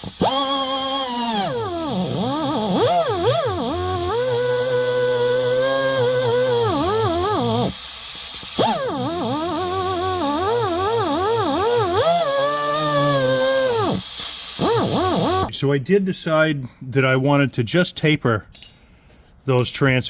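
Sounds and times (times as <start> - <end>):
air die grinder whining: 0.0 - 15.5.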